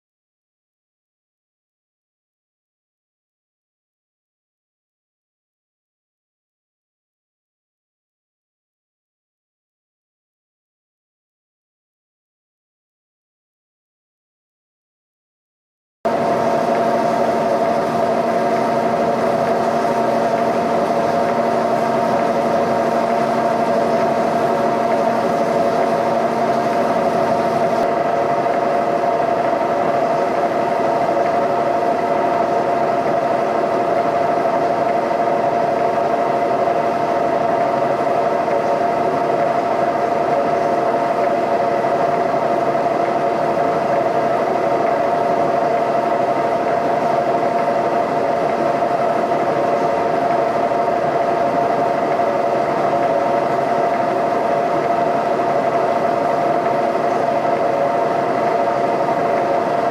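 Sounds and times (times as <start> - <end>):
boring machine whine: 16.1 - 59.9
low machine tone: 16.1 - 59.9
machine hum: 16.1 - 59.9.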